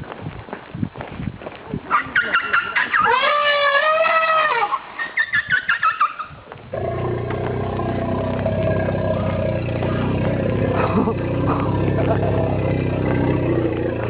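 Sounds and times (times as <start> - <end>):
elephant squealing: 1.9 - 6.3
motor engine hum: 6.8 - 14.0.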